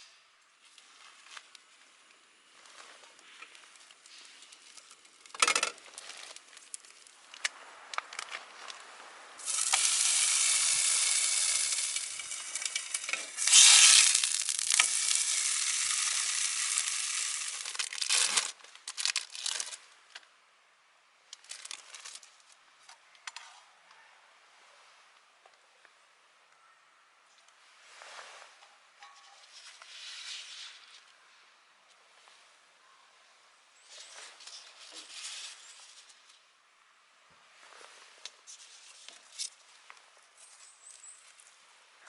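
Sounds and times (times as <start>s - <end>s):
food sizzling in a pan: 9.4s - 17.6s.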